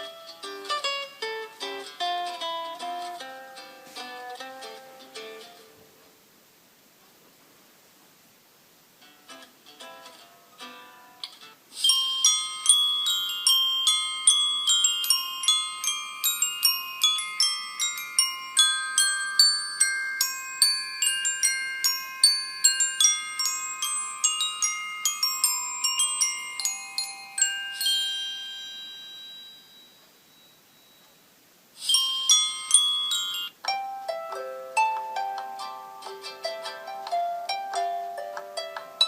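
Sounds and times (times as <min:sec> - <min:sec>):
phone ringtone melody: 0:11.8 - 0:30.9, 0:31.8 - 0:36.9.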